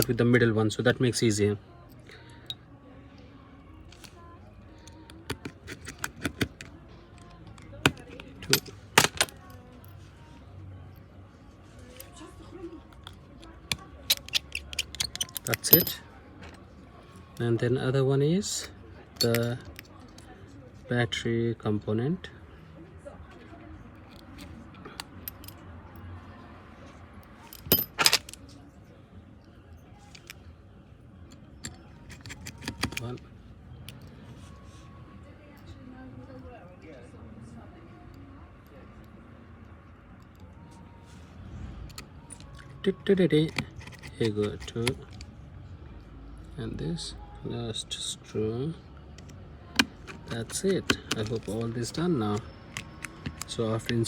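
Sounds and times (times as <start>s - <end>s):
screwdriver clicking on metal: 5.2s - 9.4s, 13.0s - 16.0s, 31.6s - 33.1s, 43.5s - 45.2s, 49.2s - 54.0s.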